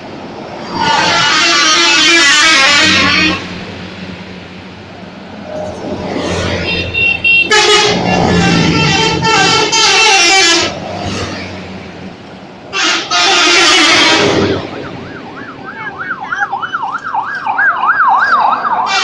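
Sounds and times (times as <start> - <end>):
multi-tone bus air horns: 0.6 - 3.6, 6.4 - 11.2, 12.7 - 14.8.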